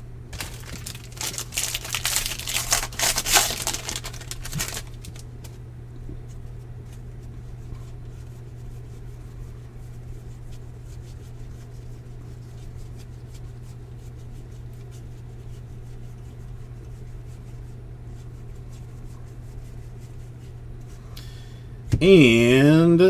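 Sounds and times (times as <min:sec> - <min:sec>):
cards clicking and rustling: 0:00.4 - 0:05.6.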